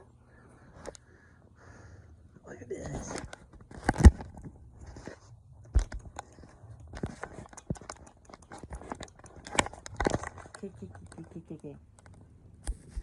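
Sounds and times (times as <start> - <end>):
cat chewing crunchy food: 5.7 - 11.5.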